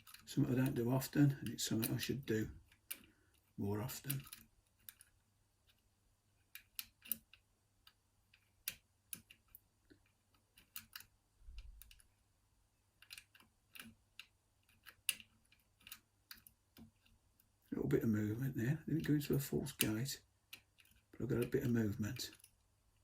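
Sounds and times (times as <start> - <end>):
lock pick metallic clicks: 4.0 - 5.1, 6.5 - 9.6, 10.5 - 12.1, 13.0 - 17.1.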